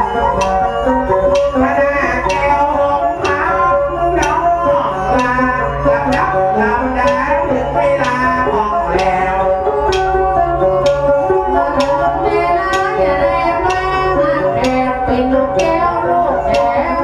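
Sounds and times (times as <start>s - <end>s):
lute playing a melody: 0.0s - 17.0s
sharp percussive tap: 11.8s - 12.0s.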